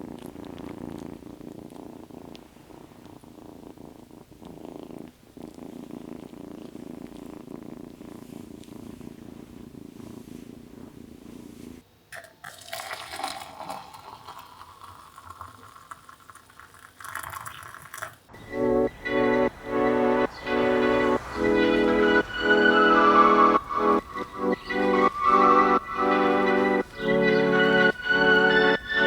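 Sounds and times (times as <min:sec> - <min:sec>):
scratchy rustling: 0:00.0 - 0:11.8, 0:18.4 - 0:29.0
cat purring: 0:00.0 - 0:11.9, 0:13.0 - 0:29.0.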